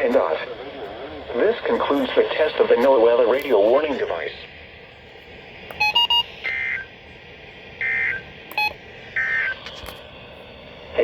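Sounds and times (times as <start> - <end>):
radio hiss: 0.0 - 5.7, 10.8 - 11.0
short electronic beeps: 7.8 - 9.6.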